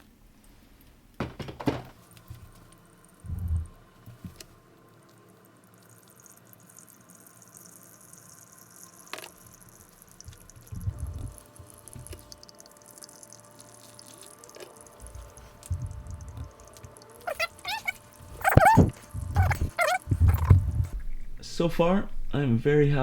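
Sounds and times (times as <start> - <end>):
coffee dripping into a carafe: 4.1 - 19.4
dull thumps: 15.0 - 21.3.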